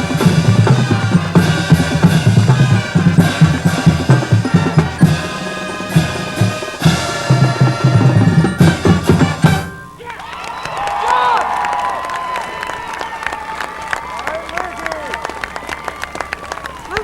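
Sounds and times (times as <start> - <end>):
bass and snare drum beat: 0.0 - 9.9
marching band playing: 0.0 - 10.3
crowd cheering: 0.0 - 17.0.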